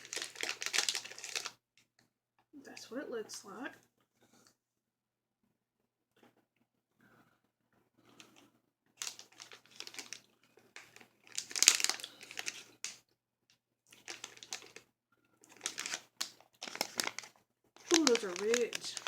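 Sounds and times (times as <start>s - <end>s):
plastic bag crinkling: 0.0s - 1.6s, 9.0s - 13.0s, 13.9s - 19.0s.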